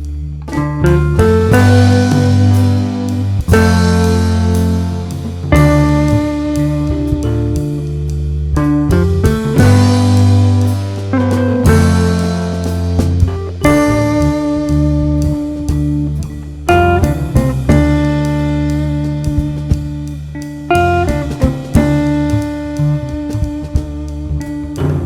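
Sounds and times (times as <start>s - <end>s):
guitar chords ringing: 0.0s - 25.0s.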